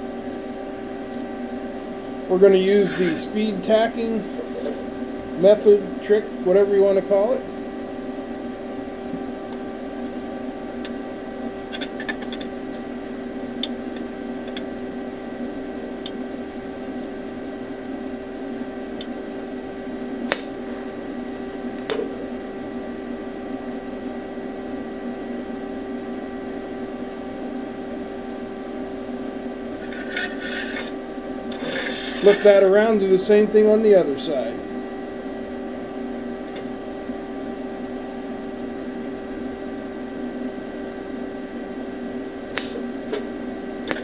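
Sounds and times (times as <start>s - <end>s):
welding machine humming: 0.0s - 22.8s, 29.1s - 34.5s.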